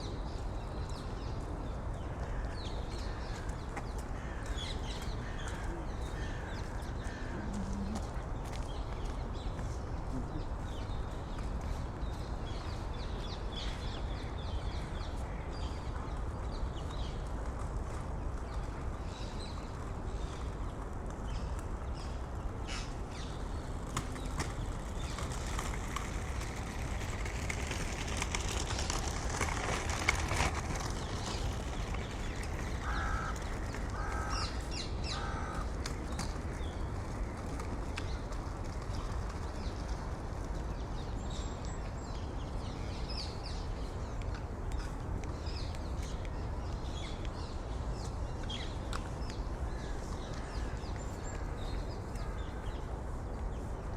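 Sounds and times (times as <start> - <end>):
distant traffic rumble: 0.0 - 53.9
birds calling: 21.3 - 38.3.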